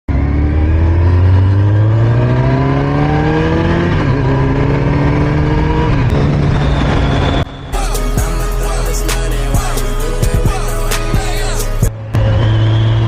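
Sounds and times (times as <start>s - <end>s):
motorcycle engine accelerating: 0.1s - 13.0s.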